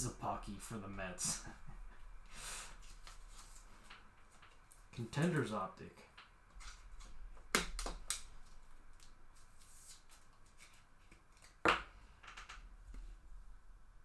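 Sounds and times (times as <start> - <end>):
cards snapping: 6.6 - 9.1.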